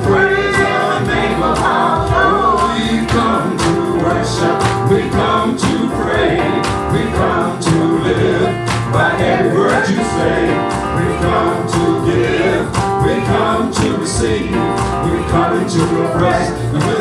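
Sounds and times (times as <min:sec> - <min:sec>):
band with steady drum beat: 0:00.0 - 0:17.0
gospel singing voices: 0:00.0 - 0:17.0.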